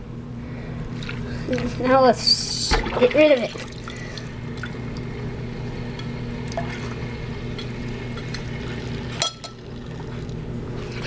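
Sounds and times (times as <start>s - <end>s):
water draining from sink: 2.4s - 11.0s.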